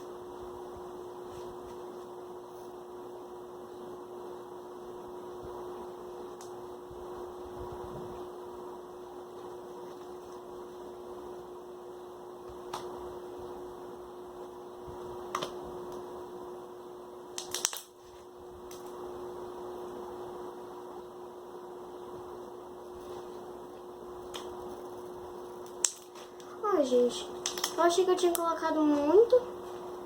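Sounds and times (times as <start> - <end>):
steady background hum: 0.0 - 30.0.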